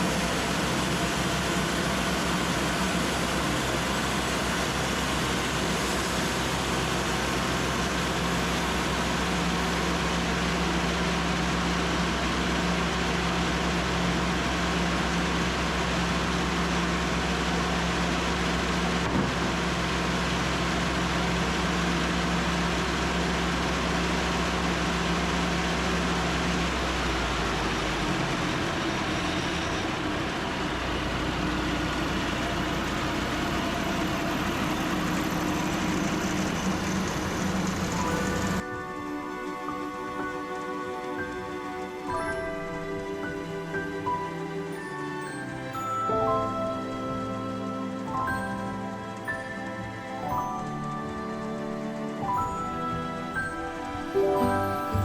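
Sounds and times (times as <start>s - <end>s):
band sawmill sawing log: 0.0s - 12.6s.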